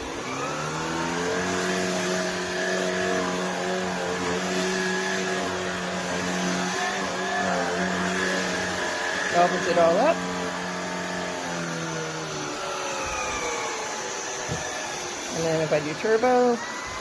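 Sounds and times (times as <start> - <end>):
vacuum cleaner motor whine: 0.0 - 17.0.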